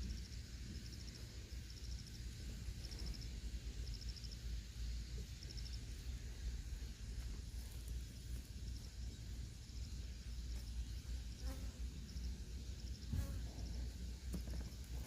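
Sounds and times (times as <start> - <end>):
crickets chirping: 0.0 - 15.0
steady low rumble: 0.0 - 15.0.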